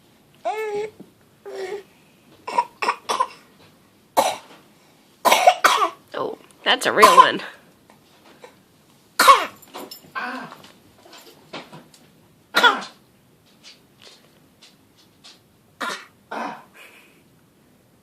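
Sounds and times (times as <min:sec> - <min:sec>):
person coughing: 0:05.3 - 0:06.0, 0:09.2 - 0:09.6, 0:12.6 - 0:13.0
throat clearing: 0:12.6 - 0:13.0, 0:15.8 - 0:17.0.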